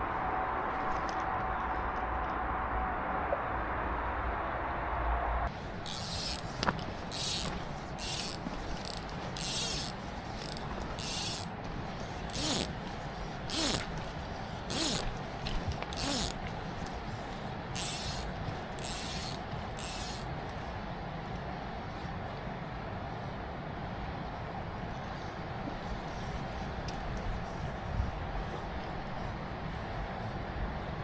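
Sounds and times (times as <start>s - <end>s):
fly reel ratcheting buzz: 5.8s - 14.1s, 14.7s - 15.2s, 15.9s - 16.4s, 17.7s - 20.3s.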